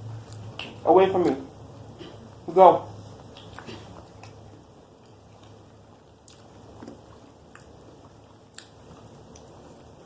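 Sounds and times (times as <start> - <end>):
person chewing food: 0.1 - 0.8, 3.0 - 10.0.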